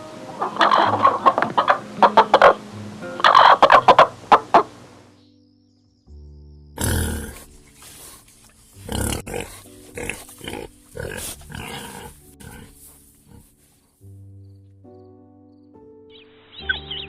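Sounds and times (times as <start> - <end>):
soft background music: 0.0 - 17.0
farm animal calling harshly: 0.3 - 2.6, 3.2 - 4.7, 6.8 - 13.5.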